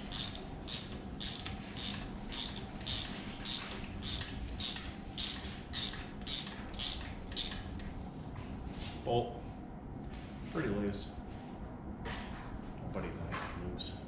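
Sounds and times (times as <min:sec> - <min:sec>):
hand ratchet pawl clicking: 0:00.0 - 0:07.7.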